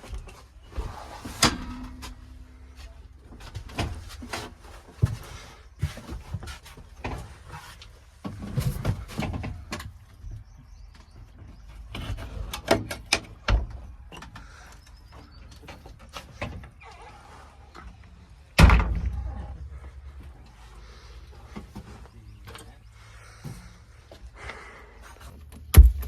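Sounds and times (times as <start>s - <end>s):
backhoe engine rumble: 0.0s - 26.0s
knocks and scraping: 0.1s - 14.6s, 25.2s - 26.0s.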